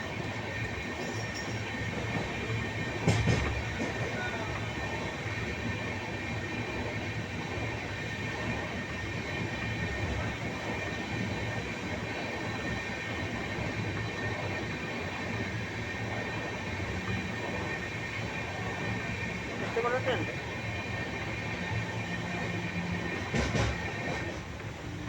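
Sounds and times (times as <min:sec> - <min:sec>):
train rushing rumble: 0:00.0 - 0:25.0.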